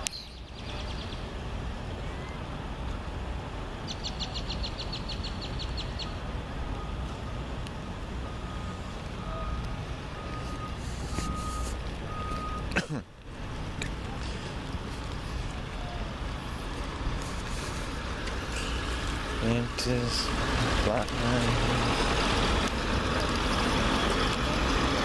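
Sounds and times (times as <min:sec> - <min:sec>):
vehicle and outdoor rumble: 0:00.0 - 0:25.0
backup alarm beeping: 0:08.2 - 0:12.7.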